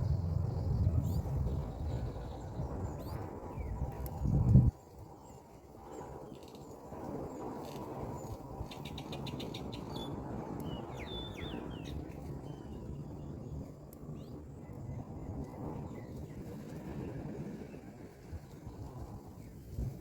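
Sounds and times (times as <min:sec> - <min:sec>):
low rumble: 0:00.0 - 0:04.7
bird ticks and chirps: 0:07.6 - 0:16.9.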